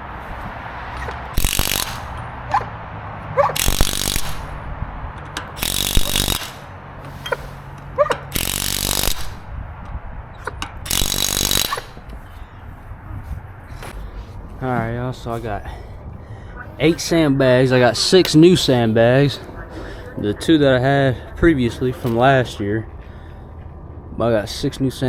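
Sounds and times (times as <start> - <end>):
impact wrench rattling bursts: 0.0 - 12.5.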